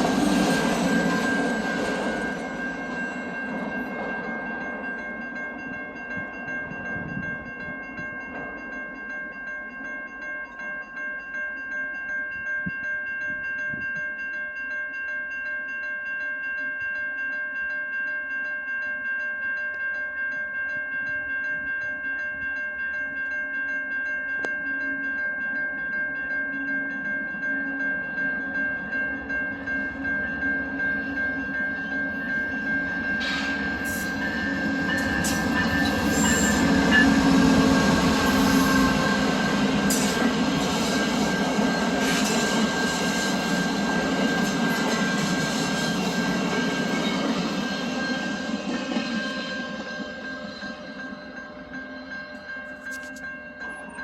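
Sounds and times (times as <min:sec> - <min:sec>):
train rumbling on tracks: 0:00.0 - 0:09.5, 0:26.9 - 0:54.0
steady high-pitched tone: 0:00.0 - 0:09.8, 0:24.4 - 0:54.0.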